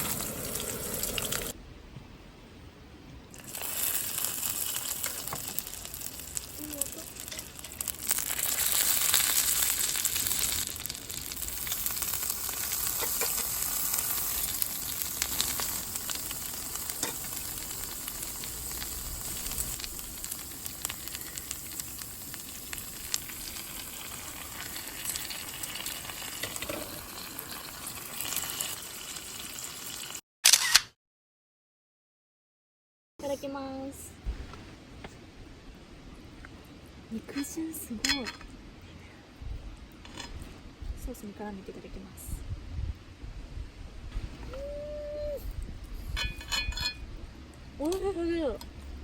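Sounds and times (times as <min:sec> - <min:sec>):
meat frying sizzle: 0:00.0 - 0:01.6, 0:03.3 - 0:30.2.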